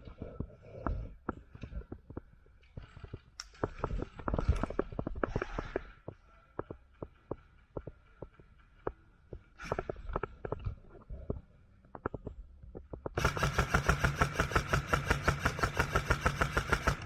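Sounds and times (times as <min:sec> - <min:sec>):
footsteps clicks and thumps: 0:00.0 - 0:13.2.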